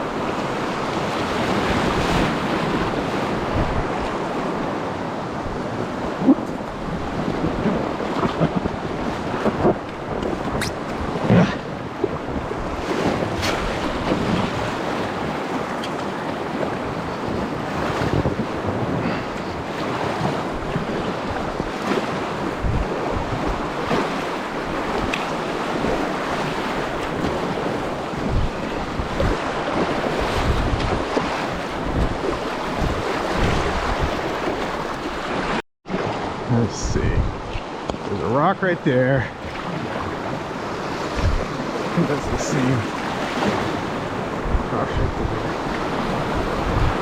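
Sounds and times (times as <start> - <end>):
wind buffeting microphone: 0.0 - 38.4, 39.1 - 47.0
whitewater rushing: 39.4 - 47.0.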